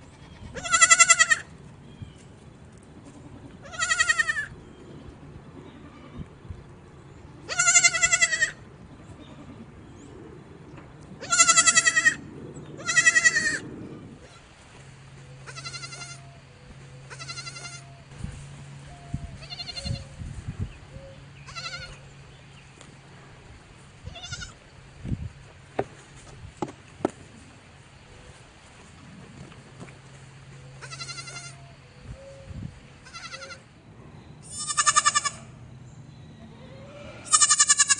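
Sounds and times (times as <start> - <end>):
goats bleating: 0.0 - 1.5, 3.2 - 4.5, 7.5 - 8.6, 11.2 - 13.6, 15.4 - 16.2, 17.1 - 17.9, 21.5 - 22.0, 30.8 - 31.6, 33.0 - 33.6, 34.4 - 35.5, 36.9 - 37.9.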